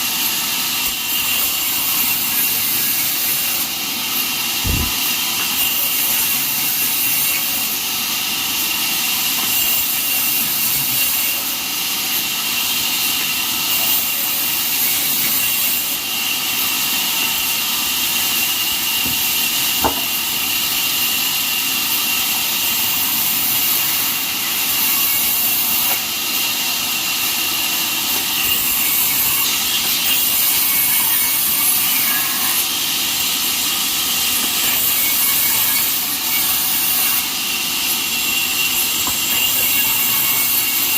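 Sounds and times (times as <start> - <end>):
band sawmill whine: 4.6 - 5.4.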